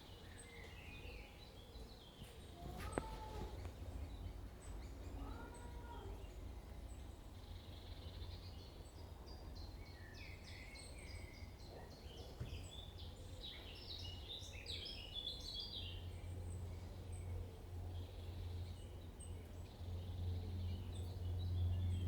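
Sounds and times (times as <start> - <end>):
small birds chirping: 0.0 - 17.3.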